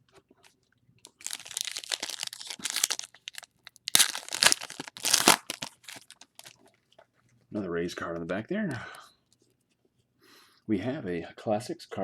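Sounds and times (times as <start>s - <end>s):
foil wrapper crinkling: 1.1s - 6.6s.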